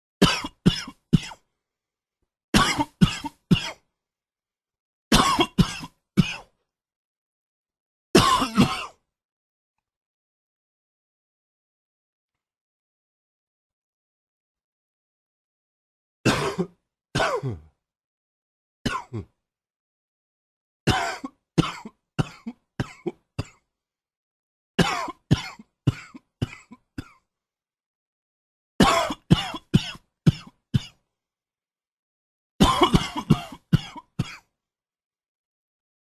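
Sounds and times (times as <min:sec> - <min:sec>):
man coughing: 0:00.2 - 0:01.4, 0:02.6 - 0:03.8, 0:05.1 - 0:06.5, 0:08.2 - 0:09.0, 0:16.3 - 0:17.7, 0:18.9 - 0:19.3, 0:20.9 - 0:23.6, 0:24.8 - 0:27.2, 0:28.8 - 0:31.0, 0:32.6 - 0:34.5.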